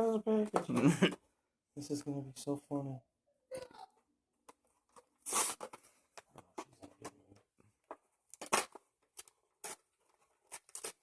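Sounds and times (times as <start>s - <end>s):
plastic packaging tearing: 5.2s - 5.8s, 8.3s - 9.9s, 10.5s - 11.0s.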